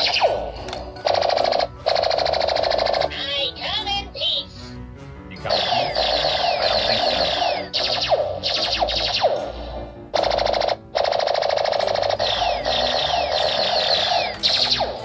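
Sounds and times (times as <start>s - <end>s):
rapid buzzing pulse: 0.0s - 3.6s, 5.5s - 15.0s
laser blaster zaps: 5.6s - 15.0s.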